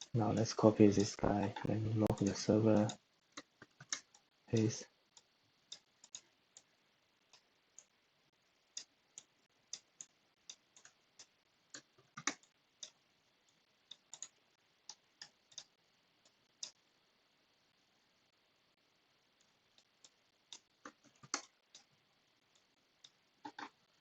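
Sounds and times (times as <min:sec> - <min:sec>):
mouse and keyboard clicks: 0:01.0 - 0:04.7, 0:08.8 - 0:13.0, 0:20.5 - 0:21.9, 0:23.4 - 0:23.8.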